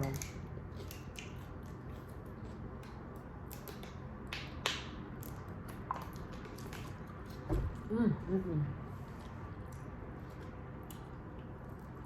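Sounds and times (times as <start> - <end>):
wet mouth clicks and smacks: 0.0 - 1.9, 2.7 - 7.1
low steady background noise: 0.0 - 12.0.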